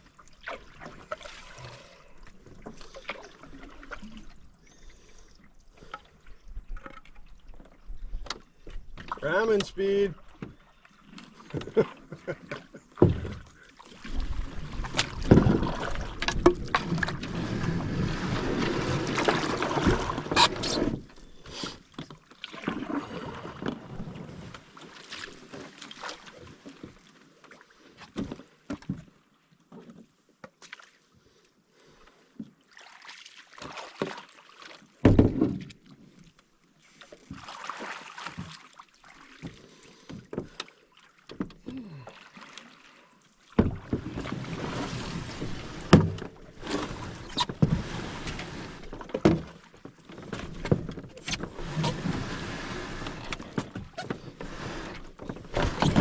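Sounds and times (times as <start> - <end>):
paddle strokes: 0.0 - 29.1, 29.7 - 56.0
canoe hull scraping over dam: 11.3 - 21.9, 43.6 - 56.0
water splashing: 13.0 - 21.8, 37.2 - 40.1.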